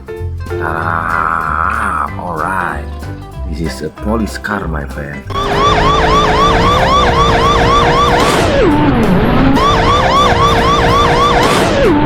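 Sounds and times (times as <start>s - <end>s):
police siren yelping: 5.3s - 12.0s.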